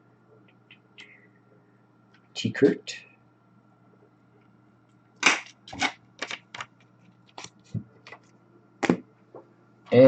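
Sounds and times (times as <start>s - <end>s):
cards and packaging snapping rustling: 5.2s - 8.2s.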